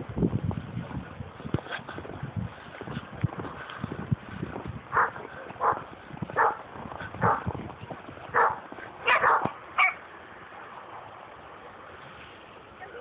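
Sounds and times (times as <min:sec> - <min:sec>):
dog barking: 0:04.9 - 0:05.8, 0:06.4 - 0:06.6, 0:07.2 - 0:07.4, 0:08.3 - 0:10.0.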